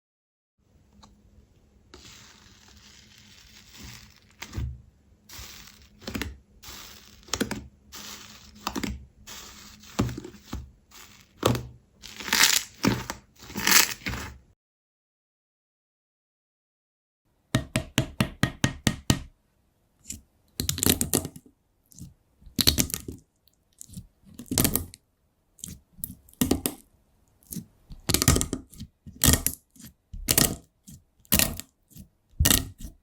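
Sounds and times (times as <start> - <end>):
slime squeezed by hand: 12.1 - 14.2.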